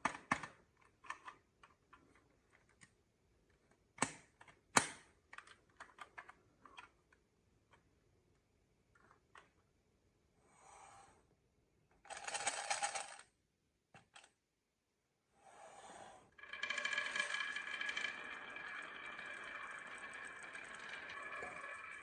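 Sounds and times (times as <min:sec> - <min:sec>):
marbles rolling on a track: 0:16.4 - 0:22.0
steady ringing tone: 0:16.4 - 0:22.0.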